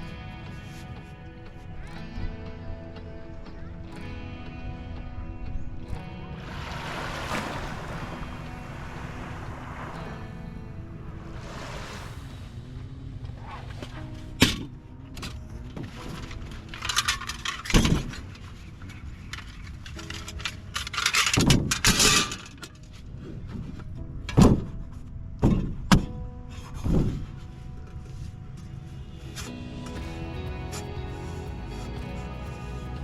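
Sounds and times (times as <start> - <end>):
soft background music: 0.0 - 33.0.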